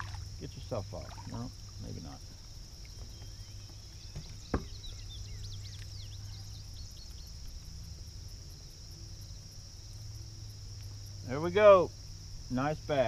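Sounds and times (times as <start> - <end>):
high insect drone: 0.0 - 13.0
bird chirping: 1.2 - 8.1
sharp knock: 4.2 - 4.8.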